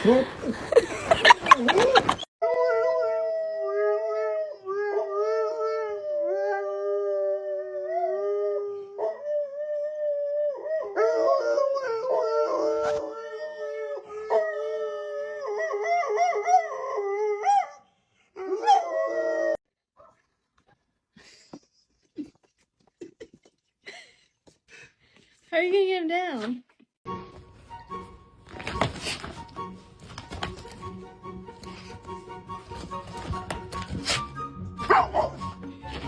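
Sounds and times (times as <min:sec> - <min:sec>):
dog howling: 0:18.4 - 0:19.6.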